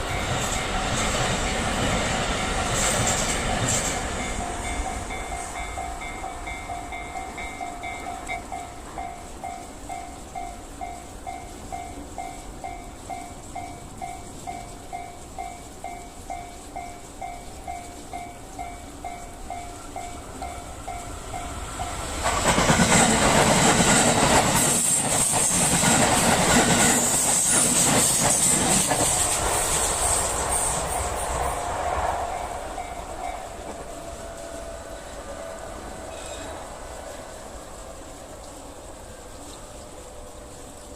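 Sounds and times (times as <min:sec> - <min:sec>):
train wheels clattering: 0:00.0 - 0:40.0
crossing gong bell clanging: 0:02.4 - 0:22.2, 0:32.3 - 0:34.6.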